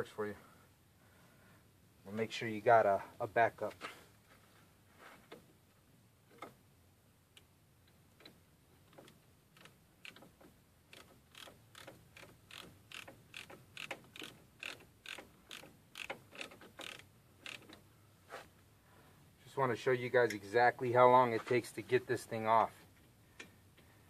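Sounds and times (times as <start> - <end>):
ratchet wrench clicking: 10.9 - 17.8.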